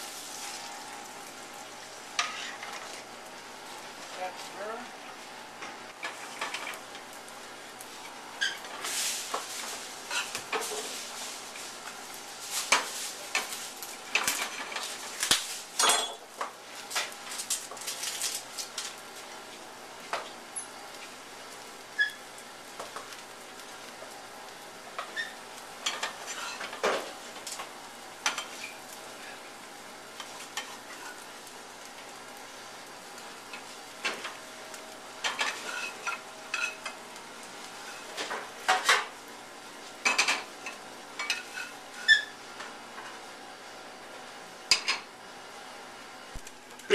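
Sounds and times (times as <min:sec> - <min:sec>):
omelets sizzling in frying pans: 0:00.0 - 0:46.9
utensil clattering against pans: 0:12.5 - 0:17.1, 0:25.0 - 0:28.8, 0:35.2 - 0:37.0, 0:38.0 - 0:39.1, 0:40.0 - 0:41.7.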